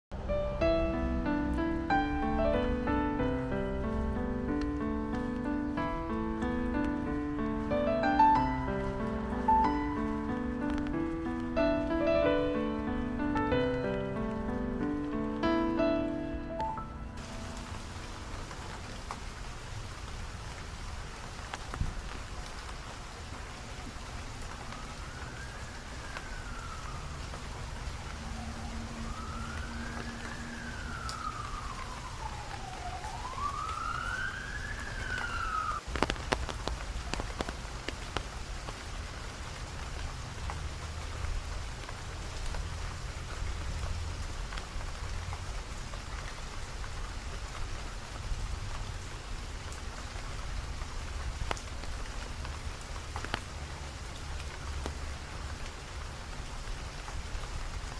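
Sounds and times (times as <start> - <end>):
steady rain: 0.1 - 57.9
emergency siren wailing: 24.6 - 35.9.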